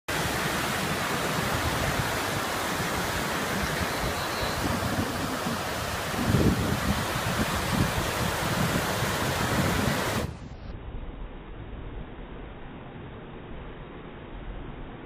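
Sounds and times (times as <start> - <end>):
waves breaking on a beach: 0.1 - 10.5.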